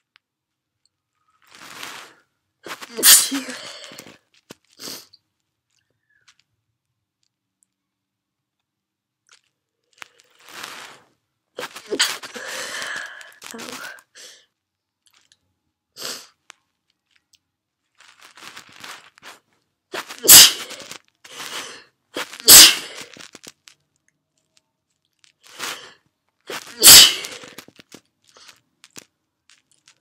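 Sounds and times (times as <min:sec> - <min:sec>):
woman sneezing: 0:02.7 - 0:04.1, 0:11.6 - 0:14.3, 0:20.0 - 0:23.2, 0:26.5 - 0:27.6.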